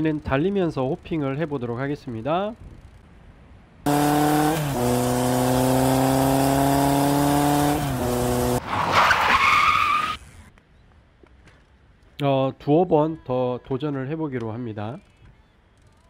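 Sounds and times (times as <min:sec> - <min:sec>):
race car engine high revs: 0:03.9 - 0:08.6
tyre screech: 0:08.5 - 0:10.5.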